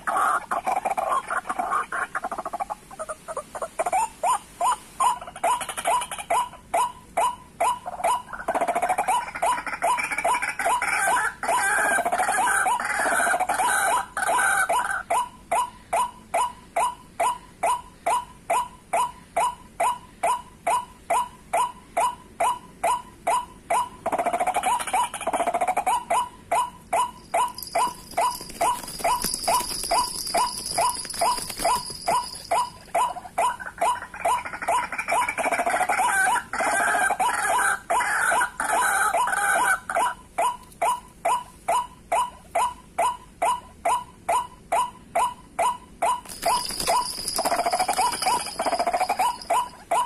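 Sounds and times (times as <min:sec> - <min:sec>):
bird croaking calls: 0:21.1 - 0:43.1, 0:45.2 - 0:50.0.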